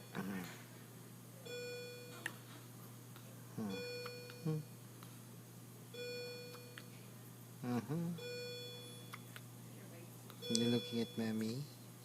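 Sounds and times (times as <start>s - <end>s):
constant low hum: 0.0s - 12.0s
person humming: 3.6s - 3.8s, 4.4s - 4.7s, 7.6s - 8.2s.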